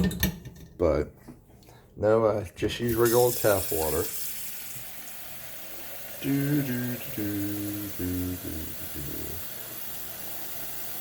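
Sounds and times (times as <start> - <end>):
running tap water: 2.9 - 11.0
man humming: 6.2 - 9.4.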